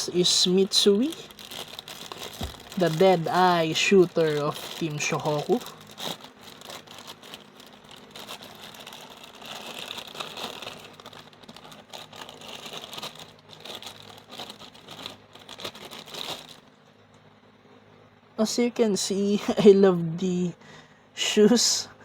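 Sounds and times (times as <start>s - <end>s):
plastic packaging crinkling: 0.0s - 16.7s.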